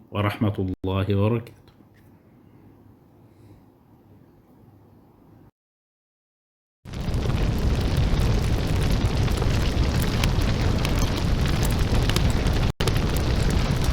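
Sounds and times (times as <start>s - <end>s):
deep rumble: 6.9s - 13.9s
loud dense crackling: 6.9s - 13.9s.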